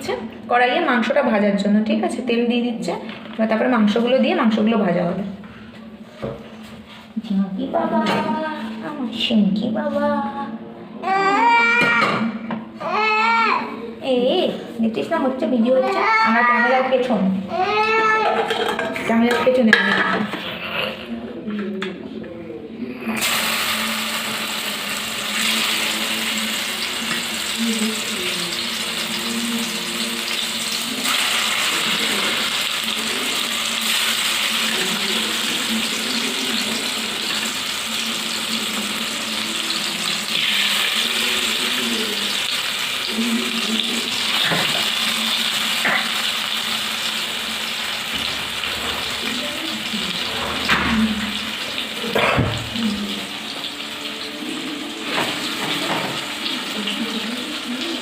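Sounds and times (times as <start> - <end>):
chicken sizzling in hot oil: 23.2 - 58.0.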